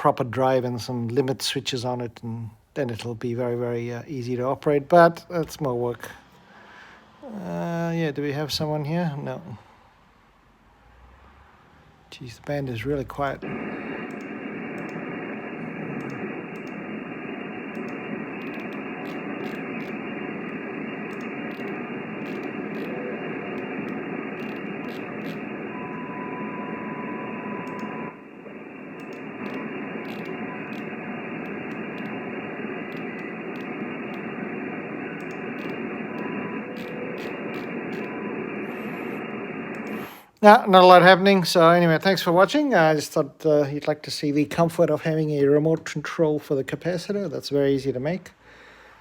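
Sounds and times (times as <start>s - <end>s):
radio receiver hiss: 0.0s - 9.7s, 12.1s - 49.0s
steady whistle tone: 13.7s - 40.2s.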